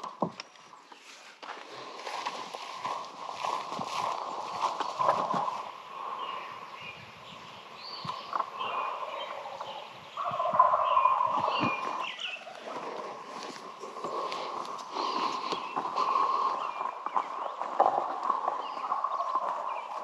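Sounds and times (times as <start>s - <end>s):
songbirds chirping: 0.0s - 20.0s
turkey gobbling: 8.2s - 13.6s.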